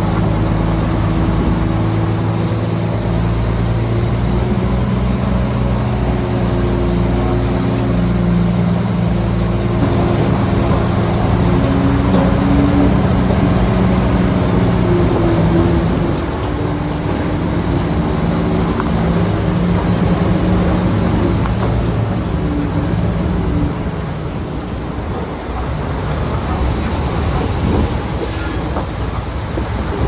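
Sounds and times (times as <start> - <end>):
heavy diesel machinery working: 0.0 - 30.0.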